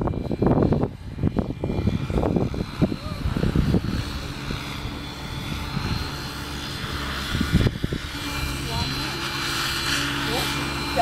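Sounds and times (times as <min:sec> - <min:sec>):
helicopter rotor drone: 0:00.0 - 0:11.0
high motor whine: 0:00.0 - 0:11.0
wind buffeting on microphone: 0:00.0 - 0:11.0.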